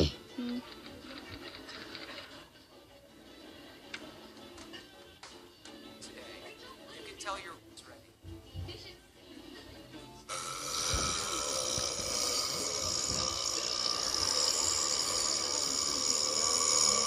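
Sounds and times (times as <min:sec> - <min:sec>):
long rough burp: 0:10.3 - 0:17.0.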